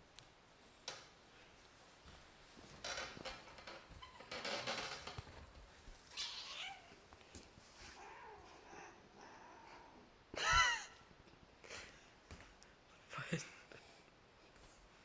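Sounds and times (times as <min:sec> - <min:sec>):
cat meowing: 0:06.1 - 0:07.0.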